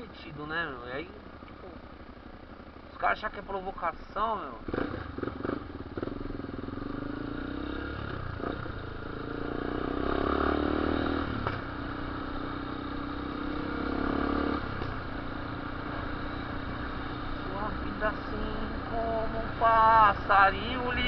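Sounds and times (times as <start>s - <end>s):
motorcycle engine revving: 4.3s - 21.0s
sharp exhaust snap: 11.3s - 11.7s.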